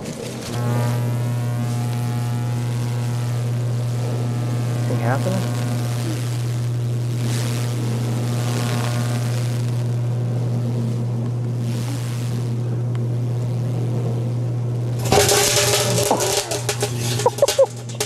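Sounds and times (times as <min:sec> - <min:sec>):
microwave oven humming: 0:00.0 - 0:18.0.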